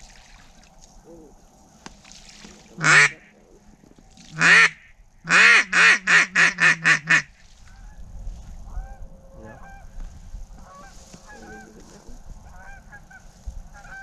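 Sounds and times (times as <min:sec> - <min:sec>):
duck call quacking: 0:02.8 - 0:03.3, 0:04.4 - 0:07.3, 0:10.6 - 0:11.8, 0:12.5 - 0:14.0.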